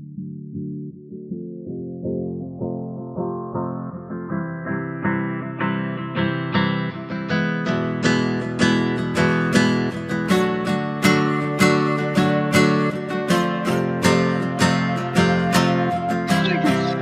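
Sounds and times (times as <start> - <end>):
acoustic guitar strumming: 5.1 - 17.0.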